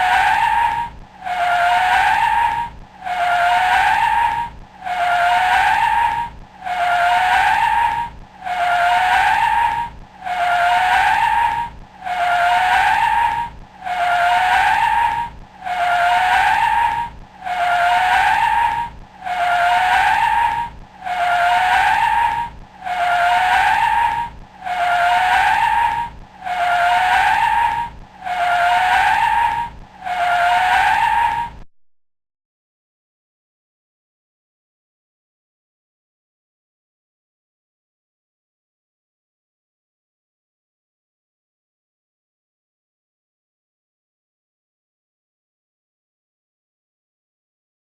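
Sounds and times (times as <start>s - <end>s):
car tyres screeching: 0.0s - 31.6s.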